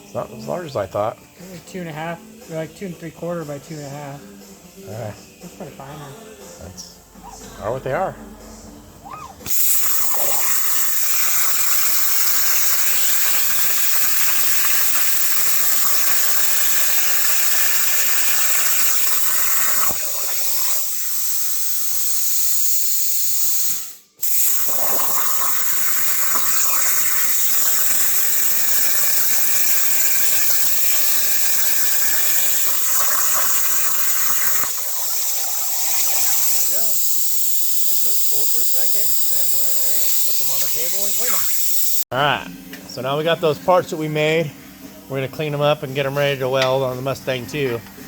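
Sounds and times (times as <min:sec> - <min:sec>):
plasma cutter hissing: 0:09.4 - 0:42.1.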